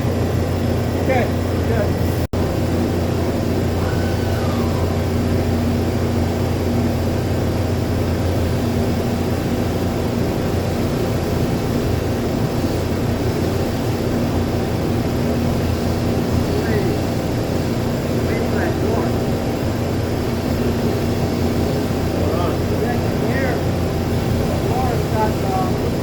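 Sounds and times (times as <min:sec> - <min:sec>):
industrial machinery droning: 0:00.0 - 0:26.0.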